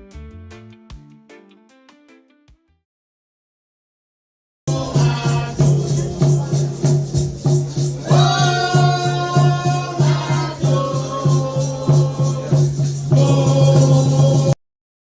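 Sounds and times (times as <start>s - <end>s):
music with pulsing beat: 0.0s - 2.6s.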